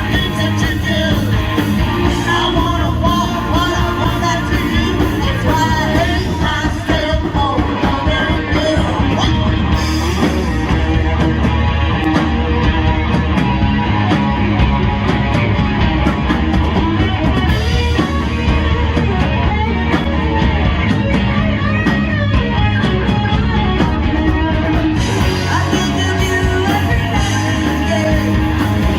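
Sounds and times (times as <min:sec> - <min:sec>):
person singing: 0:00.0 - 0:11.3, 0:24.7 - 0:28.9
drums: 0:00.0 - 0:28.9.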